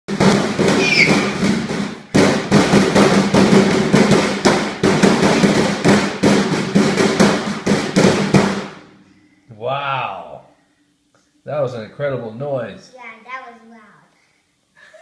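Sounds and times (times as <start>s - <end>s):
loud rapid banging and crashing: 0.1s - 8.9s.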